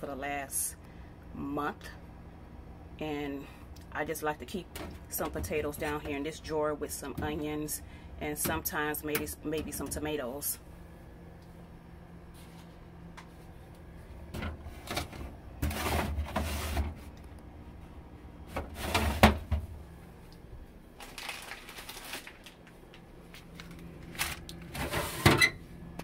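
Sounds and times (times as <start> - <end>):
plastic drawers knocking and scraping: 14.3 - 17.1, 18.5 - 19.7.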